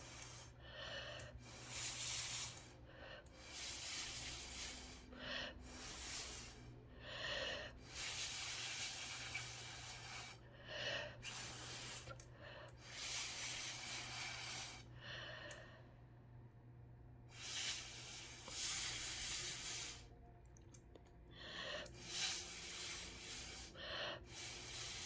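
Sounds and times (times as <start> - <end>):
steady low hum: 0.0 - 25.0
airy hissing bursts: 1.5 - 2.8, 3.4 - 6.7, 7.8 - 10.4, 12.8 - 14.9, 17.4 - 20.1, 22.0 - 25.0.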